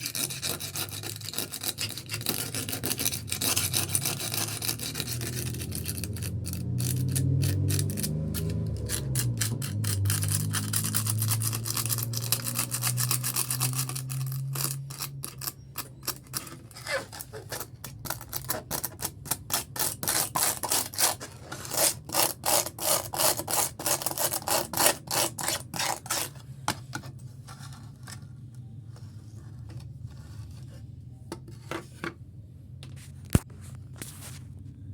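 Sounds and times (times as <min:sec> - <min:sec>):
sandpaper rasping on fibreglass: 0:00.0 - 0:26.4.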